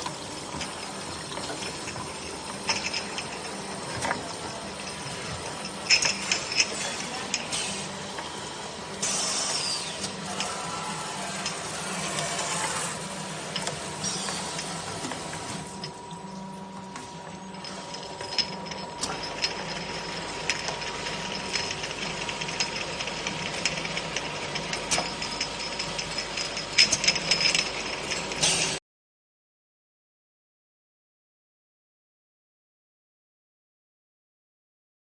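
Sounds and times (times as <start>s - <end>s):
bottle-rinsing machine hum: 0.0s - 28.8s
glass jars clicking and clattering: 0.5s - 7.4s, 17.6s - 28.6s.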